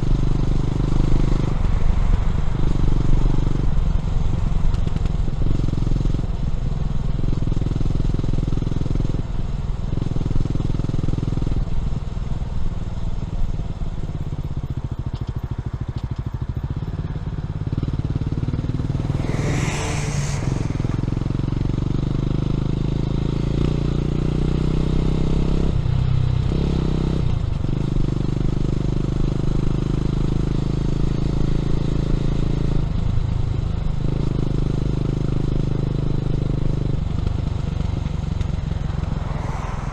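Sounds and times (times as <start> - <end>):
motorcycle engine accelerating: 17.8 - 22.0
rushing noise: 18.6 - 22.0, 37.8 - 39.9.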